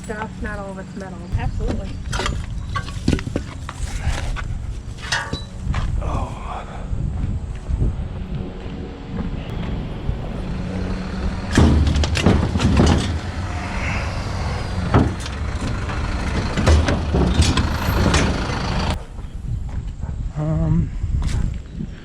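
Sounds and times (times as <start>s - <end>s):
low steady rumble: 0.0s - 21.0s
scrap metal clanking: 1.6s - 5.9s, 9.5s - 19.0s.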